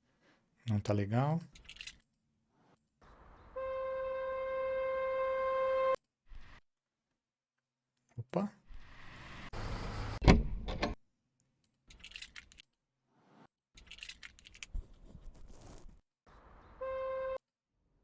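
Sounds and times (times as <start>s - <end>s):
car door handle clicking: 10.2s - 11.0s.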